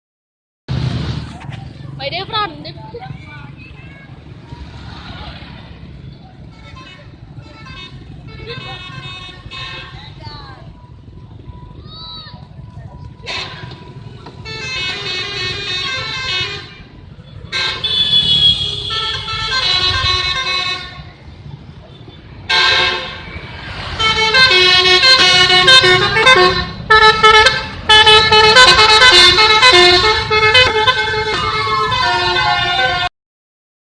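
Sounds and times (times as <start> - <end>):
bus horn playing melodic tunes: 6.6 - 10.0, 13.3 - 21.2, 22.5 - 23.3, 23.9 - 33.1.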